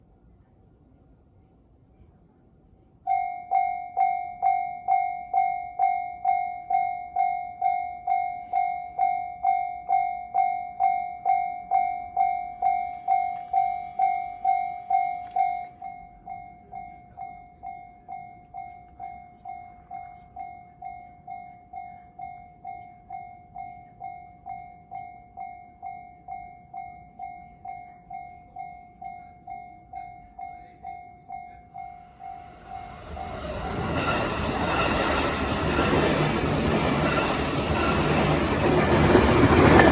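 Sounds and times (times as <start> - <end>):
level-crossing warning bell ringing: 3.1 - 39.9.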